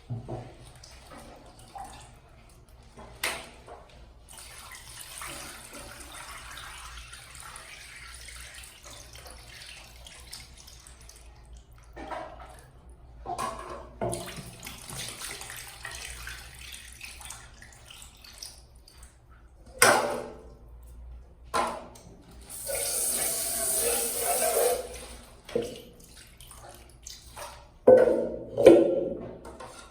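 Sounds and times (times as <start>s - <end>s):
tap water running into sink: 22.4s - 26.0s.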